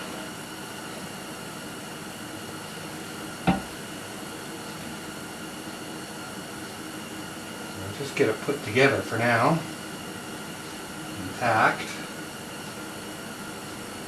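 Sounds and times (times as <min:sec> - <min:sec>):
steady workshop hum: 0:00.0 - 0:14.0.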